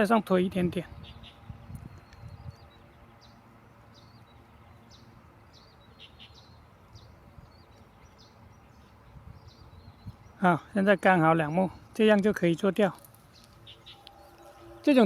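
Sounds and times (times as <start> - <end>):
small birds chirping: 0.0 - 15.0
low steady rumble: 12.9 - 15.0.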